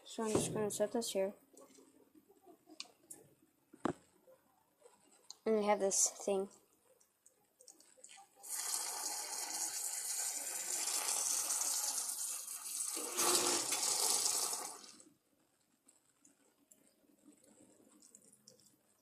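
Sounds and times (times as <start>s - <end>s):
tap water running into container: 8.4s - 15.0s.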